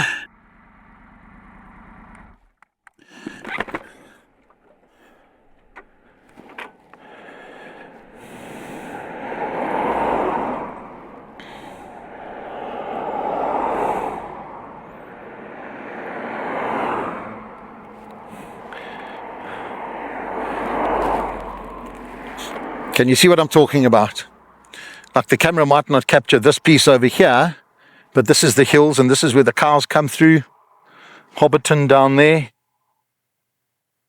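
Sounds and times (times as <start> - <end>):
motorcycle engine cutting off: 0.0 - 2.6
vehicles passing on road: 0.0 - 32.5.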